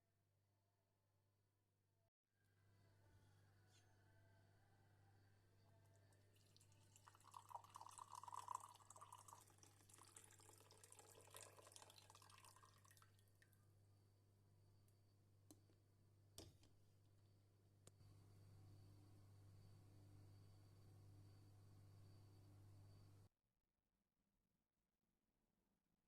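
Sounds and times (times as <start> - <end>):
water pouring and trickling: 6.3 - 13.6.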